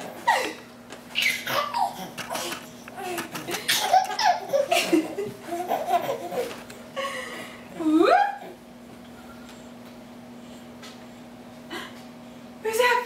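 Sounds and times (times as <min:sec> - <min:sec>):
baby laughing: 0:01.2 - 0:06.6.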